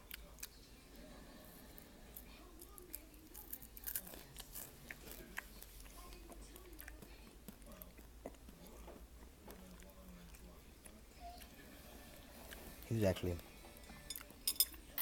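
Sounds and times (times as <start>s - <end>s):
person chewing crunchy food: 2.2s - 12.8s.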